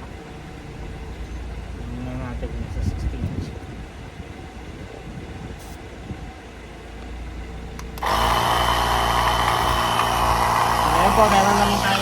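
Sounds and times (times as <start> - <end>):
low wind rumble: 0.0 - 8.1
electric tire inflator running: 7.8 - 12.0.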